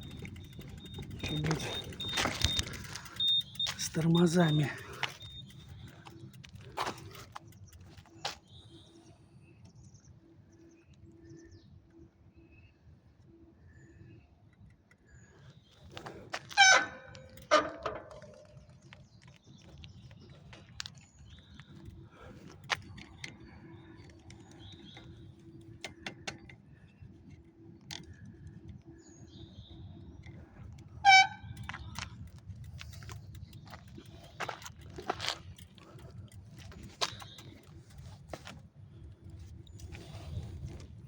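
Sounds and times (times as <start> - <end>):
bicycle brakes squealing: 0.0 - 7.3, 16.4 - 17.9, 31.0 - 32.2
low rumble of riding: 0.0 - 11.7, 13.6 - 41.0.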